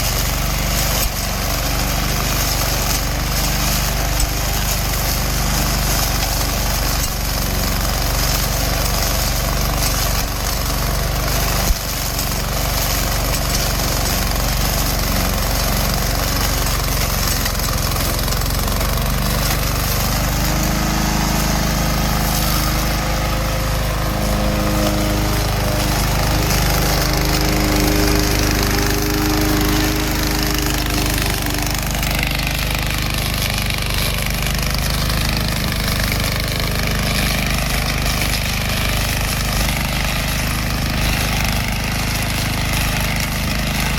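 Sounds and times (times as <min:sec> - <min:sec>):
lawn mower engine hum: 0:00.0 - 0:43.9.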